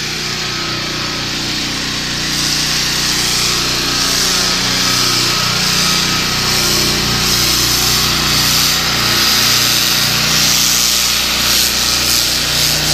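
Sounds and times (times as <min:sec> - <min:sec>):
concrete saw engine running: 0:00.0 - 0:12.9
saw blade hissing in concrete: 0:00.3 - 0:12.9.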